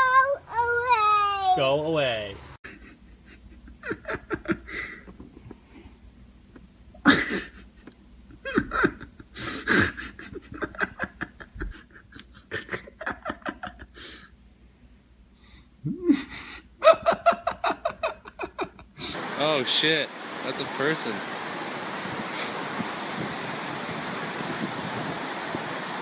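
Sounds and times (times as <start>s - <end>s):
breathy panting: 4.6s - 6.0s.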